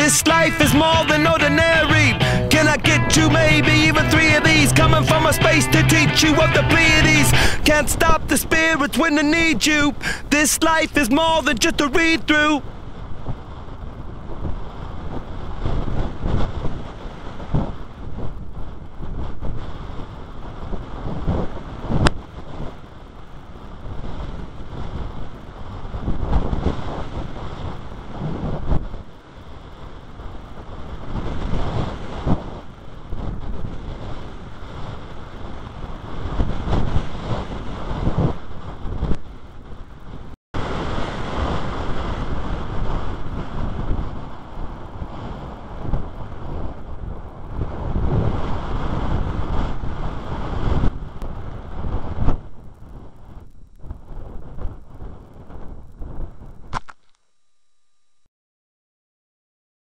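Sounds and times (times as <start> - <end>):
sharp click: 56.7 - 57.2.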